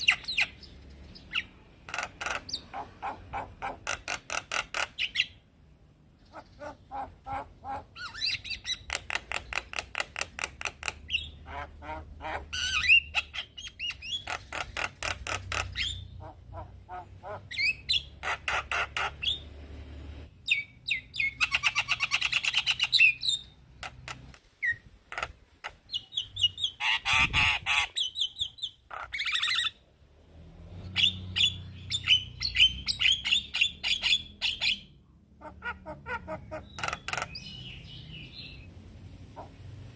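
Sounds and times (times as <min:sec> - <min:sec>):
bird harsh chattering: 0:00.0 - 0:05.4, 0:06.2 - 0:19.4, 0:20.5 - 0:29.8, 0:31.0 - 0:38.0
bird raspy squawk: 0:01.3 - 0:05.4, 0:06.2 - 0:19.4, 0:26.4 - 0:29.8, 0:31.0 - 0:37.6.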